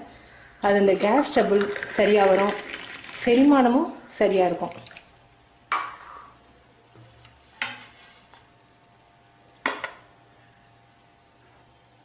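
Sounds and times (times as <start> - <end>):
dishes clinking: 5.7 - 6.4.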